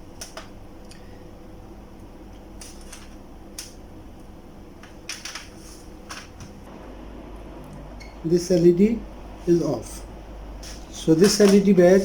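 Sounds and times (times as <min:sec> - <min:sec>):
low hum: 0:06.6 - 0:11.2
test leads clicking: 0:10.6 - 0:12.0.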